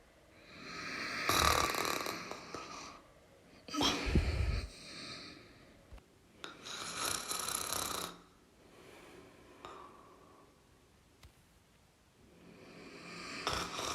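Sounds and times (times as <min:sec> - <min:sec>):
person snoring: 0:00.4 - 0:03.0, 0:03.7 - 0:05.5, 0:06.6 - 0:08.4, 0:12.6 - 0:13.9
person breathing: 0:02.6 - 0:05.9, 0:08.6 - 0:10.8.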